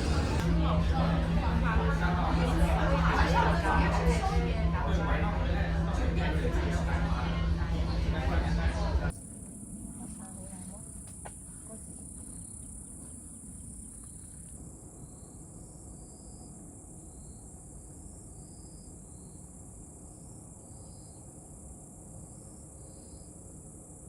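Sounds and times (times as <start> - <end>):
low background rumble: 0.0 - 14.0
crickets trilling: 9.1 - 24.0.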